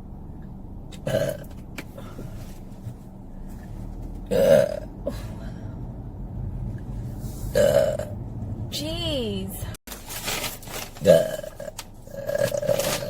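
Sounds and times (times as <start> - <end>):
woman belching: 1.0 - 1.5, 4.3 - 5.2, 7.6 - 8.1, 11.0 - 13.0.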